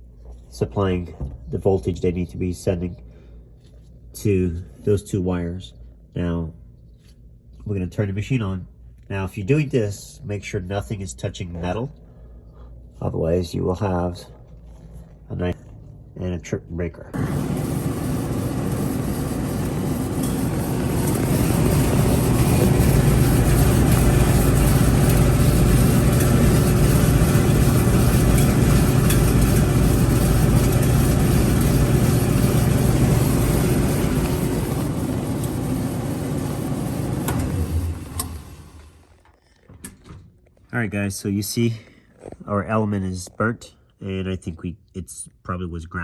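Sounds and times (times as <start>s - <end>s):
clothes dryer running: 17.2s - 39.2s.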